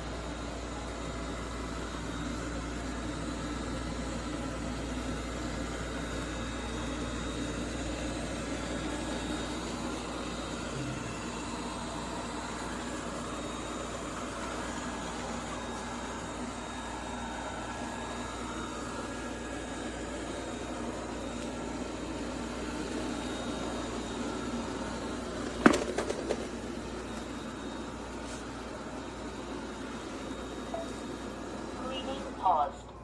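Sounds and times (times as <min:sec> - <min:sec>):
robot vacuum whirring: 0:07.2 - 0:32.1.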